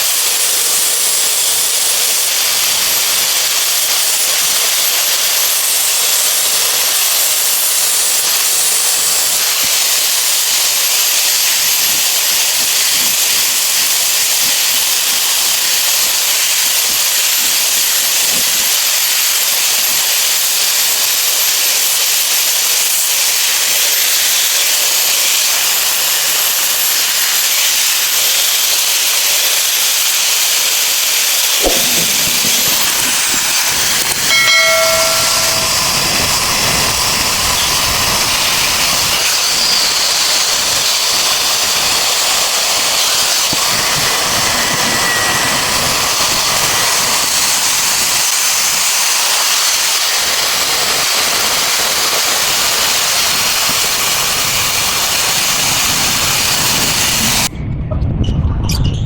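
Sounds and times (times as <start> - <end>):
loud hissing noise: 0.0 - 57.5
whistle-like tone: 34.2 - 36.5, 39.6 - 40.1.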